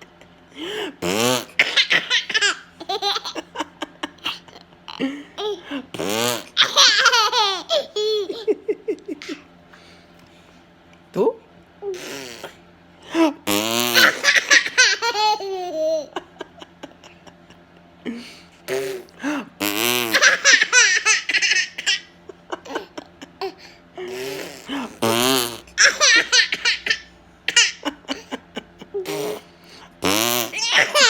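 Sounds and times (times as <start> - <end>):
adult blowing raspberry: 0.6 - 2.4, 4.2 - 6.8, 11.8 - 14.4, 18.1 - 20.4, 23.9 - 25.9, 28.9 - 31.0
baby laughing: 1.4 - 9.4, 13.9 - 17.3, 20.0 - 24.5, 25.8 - 29.4, 30.4 - 31.0.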